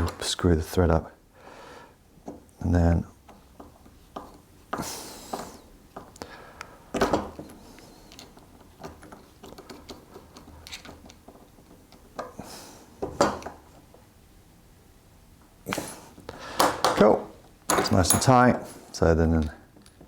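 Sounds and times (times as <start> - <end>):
screwdriver clicking and scraping: 7.4 - 12.3.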